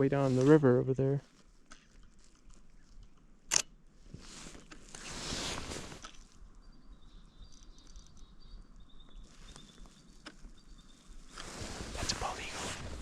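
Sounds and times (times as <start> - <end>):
sharp click: 3.5 - 3.7
rustling hiss: 4.0 - 6.6, 10.9 - 13.0.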